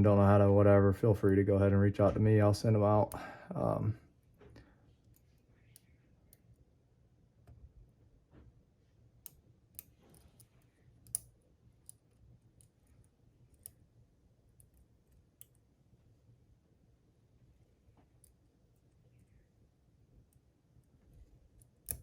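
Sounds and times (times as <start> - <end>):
metallic lock pick clicks: 9.3 - 12.9, 21.6 - 22.0.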